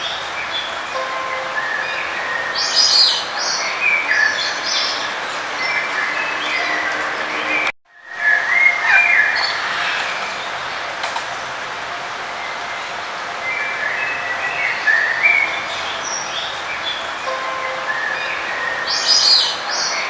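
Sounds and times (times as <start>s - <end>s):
birds chirping: 0.0s - 11.6s.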